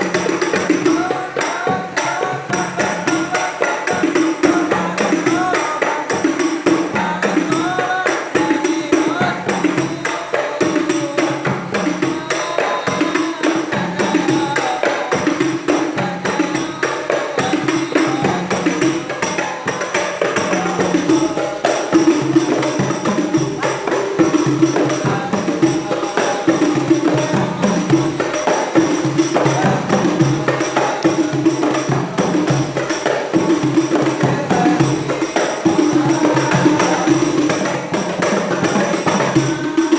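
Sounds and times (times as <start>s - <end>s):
high jingling: 0.0s - 39.9s.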